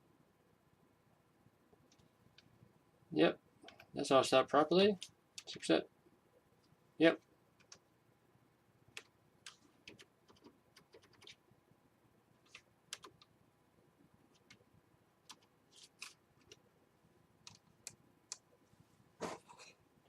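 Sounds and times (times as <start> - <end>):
keyboard and mouse clicks: 7.6 - 7.8, 8.9 - 11.4, 12.4 - 13.3, 14.3 - 14.6, 15.2 - 16.6, 17.4 - 18.5.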